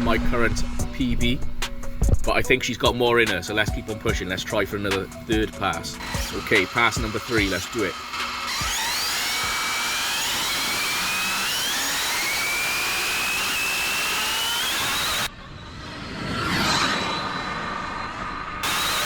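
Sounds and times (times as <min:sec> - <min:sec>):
electric motor whining: 0:04.0 - 0:15.3, 0:18.6 - 0:19.0.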